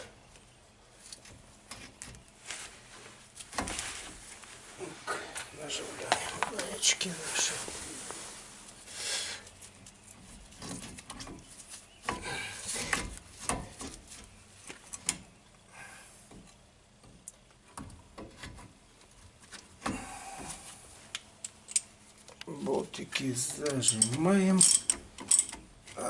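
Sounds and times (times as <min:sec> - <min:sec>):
metal bolts clinking and scraping: 0:23.4 - 0:25.6.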